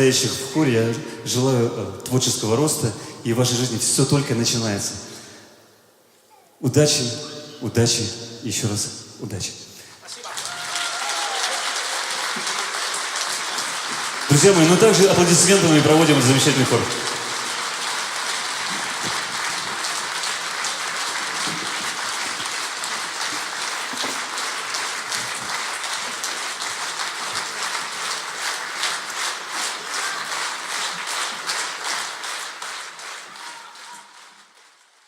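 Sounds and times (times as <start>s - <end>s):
audience applause: 10.0s - 35.0s.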